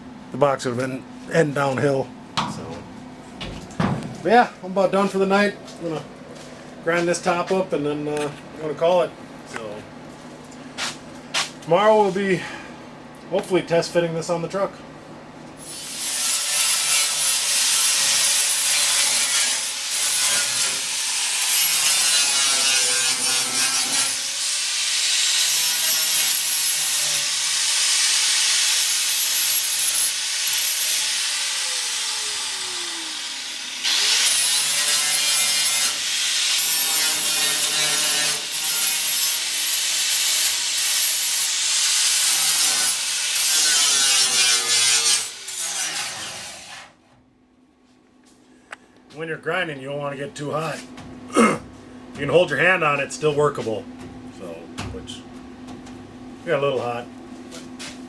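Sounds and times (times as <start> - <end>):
angle grinder grinding steel: 15.6 - 46.8.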